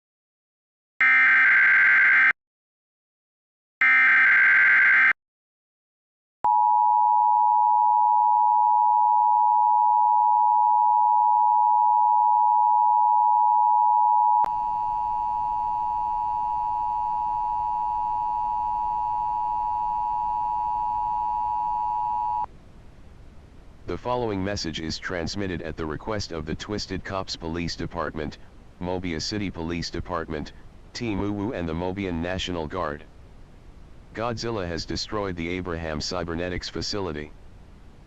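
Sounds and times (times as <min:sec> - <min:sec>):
harsh buzzing data chirp: 0:14.5 - 0:22.5.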